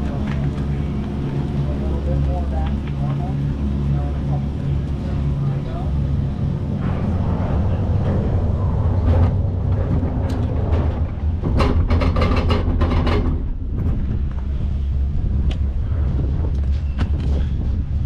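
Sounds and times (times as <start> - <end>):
wind rumble on microphone: 0.0 - 18.0
bike rattling and clattering: 6.6 - 18.0.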